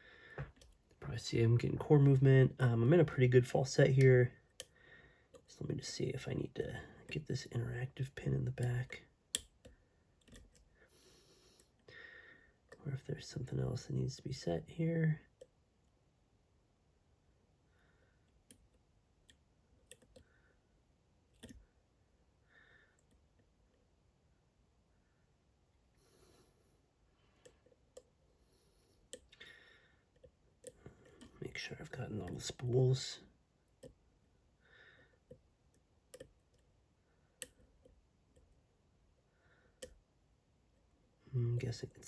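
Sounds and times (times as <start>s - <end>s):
faint lock pick clicks: 9.3s - 10.7s, 21.3s - 21.6s.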